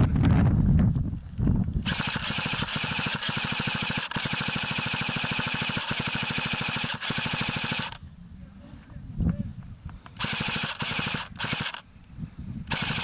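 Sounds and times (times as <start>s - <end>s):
airsoft gun rapid firing: 1.8s - 8.0s, 10.2s - 11.8s, 12.7s - 13.0s.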